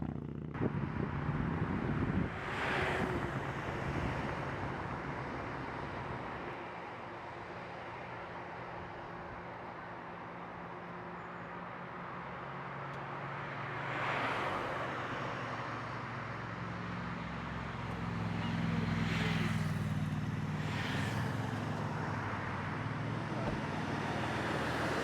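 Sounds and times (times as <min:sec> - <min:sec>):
road traffic engine hum: 0:00.0 - 0:25.0
tyre hiss of passing cars: 0:18.2 - 0:21.6.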